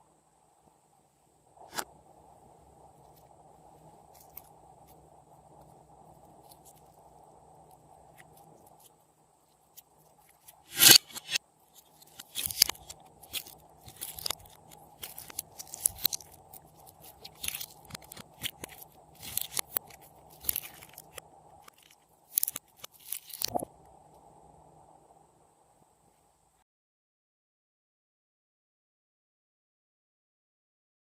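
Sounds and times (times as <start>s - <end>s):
slime crackling and popping: 12.0s - 23.6s.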